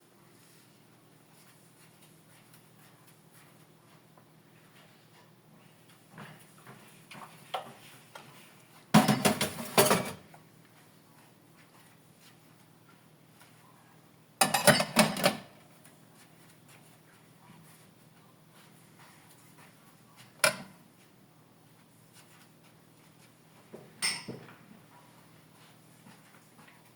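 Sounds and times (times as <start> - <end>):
crockery clattering: 9.0 - 10.2, 14.4 - 15.5, 24.0 - 24.5
dishes clinking: 9.0 - 10.2, 14.4 - 15.5, 24.0 - 24.5.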